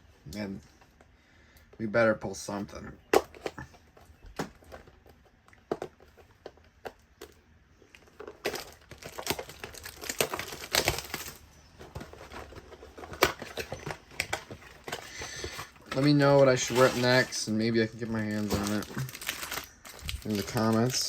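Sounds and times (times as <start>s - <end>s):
wrapper crackling and tearing: 7.9s - 21.0s
wrapper crinkling: 7.9s - 21.0s.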